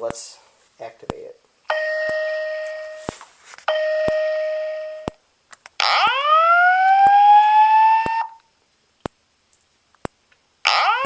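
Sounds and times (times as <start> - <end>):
steady alarm tone: 1.7 - 3.1, 3.7 - 5.1, 5.8 - 8.4
rising whoop alarm: 5.8 - 8.4.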